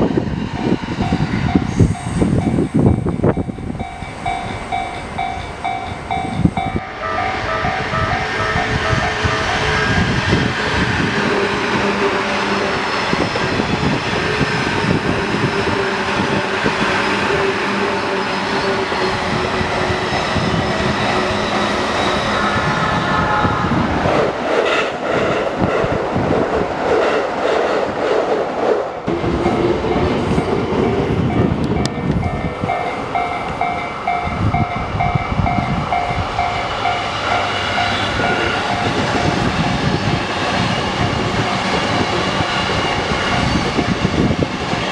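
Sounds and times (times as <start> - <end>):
trains passing: 0.0 - 44.9
crossing warning alarm: 0.6 - 10.8, 14.5 - 23.9, 29.1 - 44.8.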